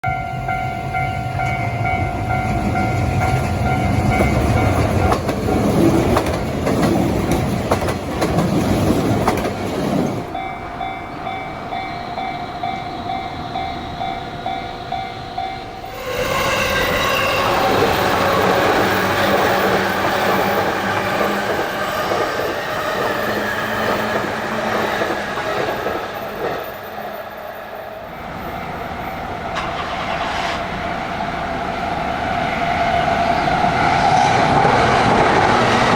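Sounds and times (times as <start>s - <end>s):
level crossing bells clanging: 0.0s - 5.3s
trains rumbling and clattering: 0.0s - 35.9s.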